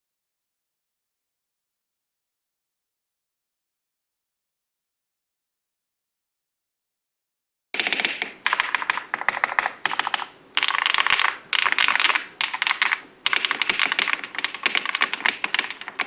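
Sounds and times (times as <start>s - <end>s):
fast typing on mechanical keyboard: 7.8s - 16.0s.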